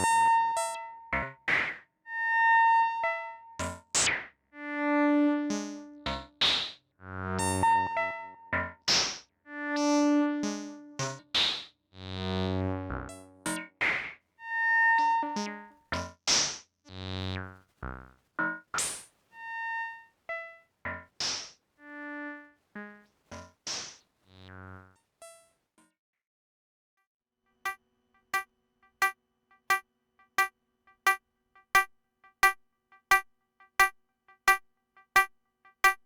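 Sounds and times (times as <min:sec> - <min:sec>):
synthesizer sequenced notes: 0:04.6 - 0:06.4, 0:09.5 - 0:11.4, 0:15.0 - 0:15.8, 0:21.8 - 0:23.6.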